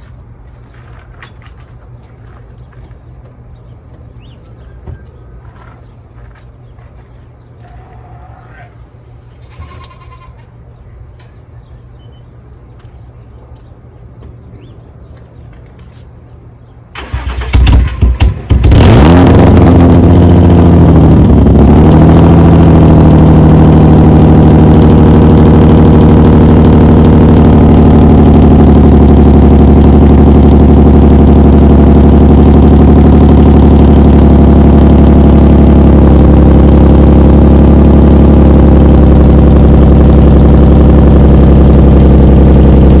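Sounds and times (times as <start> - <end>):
car engine revving and idling: 17.2 - 43.0.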